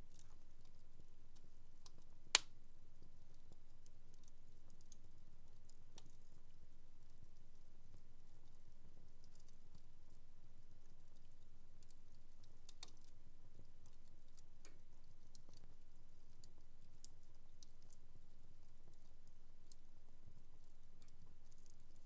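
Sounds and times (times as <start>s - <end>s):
wood fire crackling and popping: 2.3s - 2.6s.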